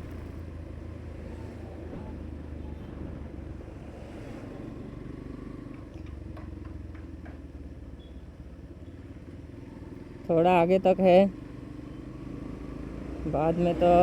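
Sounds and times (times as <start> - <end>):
motorcycle engine running: 0.0 - 1.4
road and traffic noise: 0.0 - 14.0.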